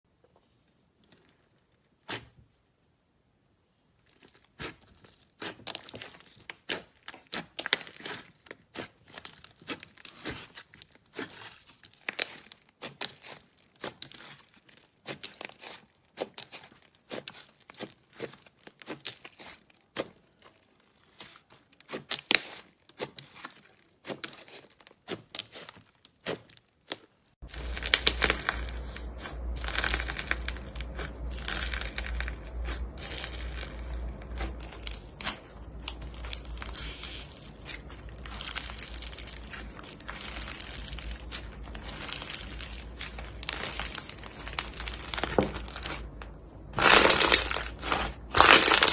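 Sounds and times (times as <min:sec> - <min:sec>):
slime squeezed by hand: 0:27.5 - 0:46.1.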